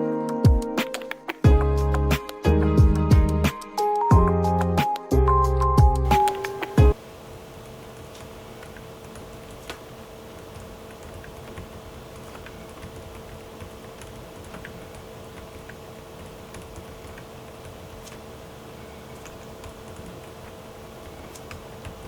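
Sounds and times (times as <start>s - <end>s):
faint steady hum: 6.0s - 22.0s.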